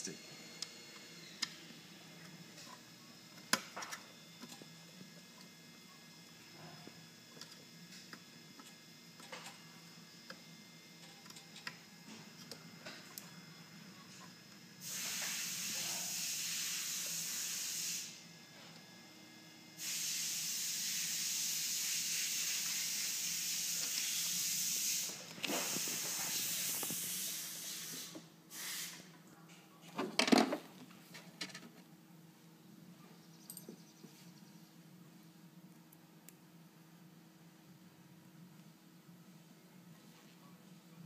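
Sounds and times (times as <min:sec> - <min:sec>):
spraying hiss: 0:14.8 - 0:18.2, 0:19.8 - 0:29.1.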